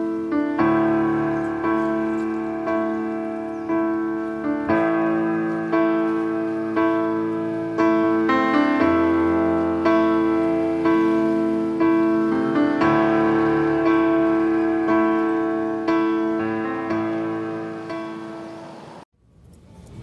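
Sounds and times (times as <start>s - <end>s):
piano music: 0.0s - 19.1s.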